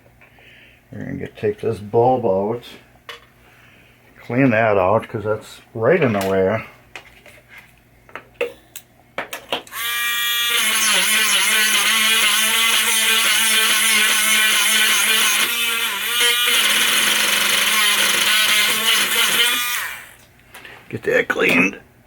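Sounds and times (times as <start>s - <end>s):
small power tool motor running: 9.7s - 20.2s.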